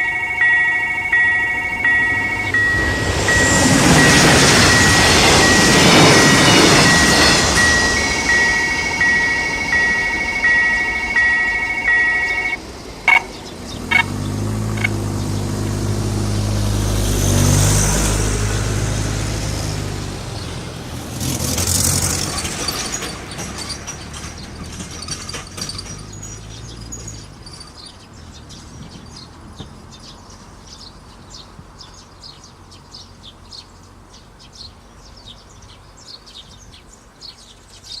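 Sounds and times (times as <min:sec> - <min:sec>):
level-crossing warning bell: 0:00.0 - 0:14.1, 0:22.2 - 0:28.3
birds chirping: 0:00.0 - 0:16.1, 0:25.8 - 0:38.0
vehicle passing: 0:00.0 - 0:24.6.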